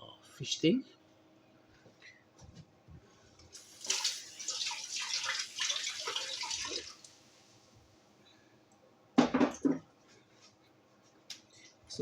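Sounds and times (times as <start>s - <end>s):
tap water running: 3.5s - 7.5s.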